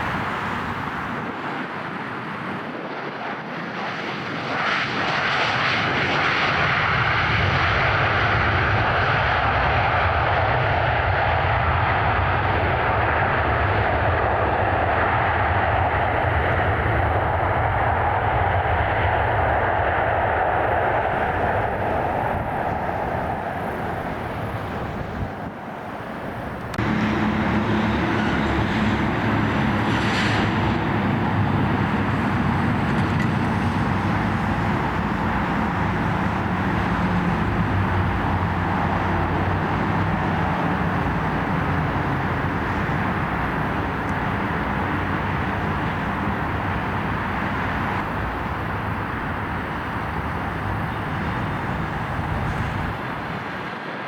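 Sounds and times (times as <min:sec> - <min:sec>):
jet airliner engine noise: 0:00.0 - 0:54.0
louder lower jet engine noise: 0:00.0 - 0:54.0.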